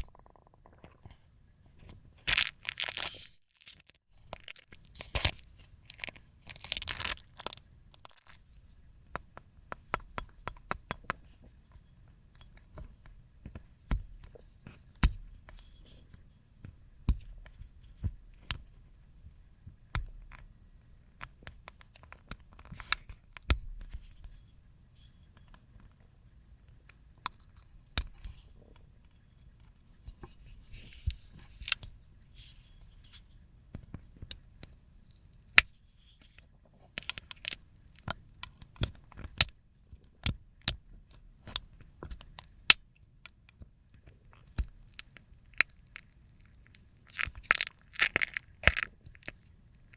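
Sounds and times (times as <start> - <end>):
slime tearing: 2.2 - 8.3
dried slime crackling off plate: 2.2 - 8.4, 44.3 - 49.9.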